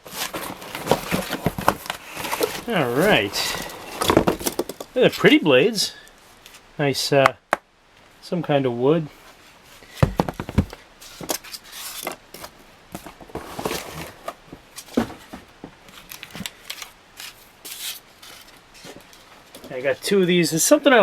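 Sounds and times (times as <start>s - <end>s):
taps and rustling: 10.0s - 11.4s.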